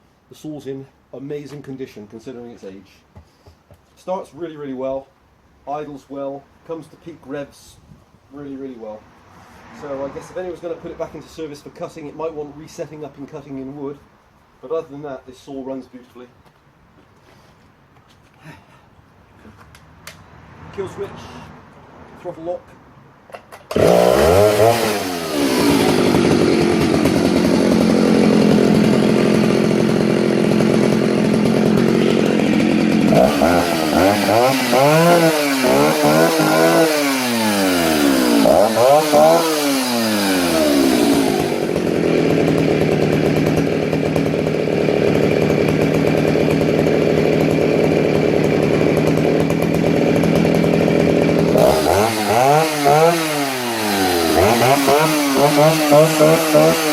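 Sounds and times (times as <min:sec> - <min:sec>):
chainsaw starting and revving: 0:09.4 - 0:11.0, 0:23.6 - 0:56.9.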